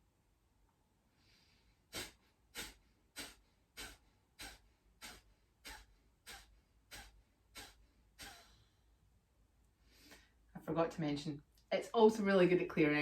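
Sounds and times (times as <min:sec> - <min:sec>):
forceful nasal exhalations: 0:01.2 - 0:08.9.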